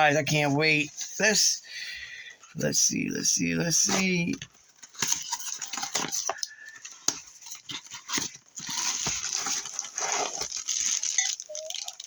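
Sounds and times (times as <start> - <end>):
packaging crinkling: 3.9 - 12.0.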